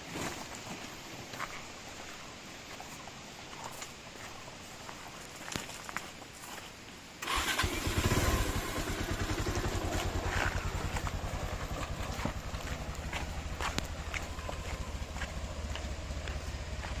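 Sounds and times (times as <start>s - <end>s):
motorcycle engine starting and idling: 7.2s - 17.0s.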